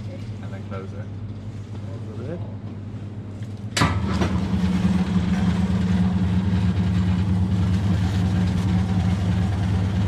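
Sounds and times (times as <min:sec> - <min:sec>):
bread slicing machine humming: 0:03.6 - 0:10.0.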